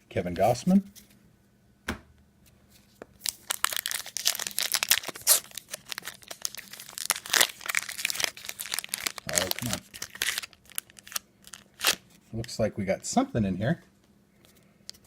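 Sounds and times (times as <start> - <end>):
single tap: 1.8 - 2.1
wrapper tearing and crinkling: 3.2 - 12.2.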